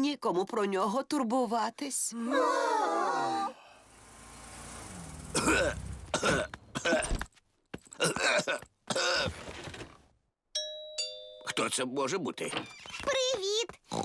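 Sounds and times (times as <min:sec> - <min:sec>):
man doing cartoon coughs: 0:05.3 - 0:07.2, 0:08.0 - 0:09.4.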